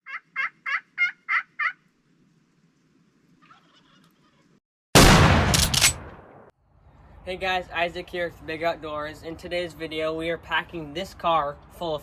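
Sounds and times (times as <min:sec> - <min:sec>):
faint turkey call: 0:00.0 - 0:01.9, 0:03.4 - 0:04.5
turkey yelping: 0:00.0 - 0:01.9, 0:03.4 - 0:04.5.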